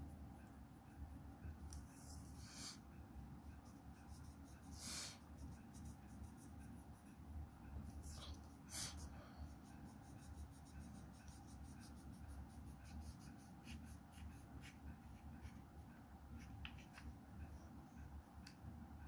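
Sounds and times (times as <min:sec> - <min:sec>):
low steady hum: 0:00.0 - 0:19.0
drawing tool scratching on paper: 0:03.5 - 0:17.1.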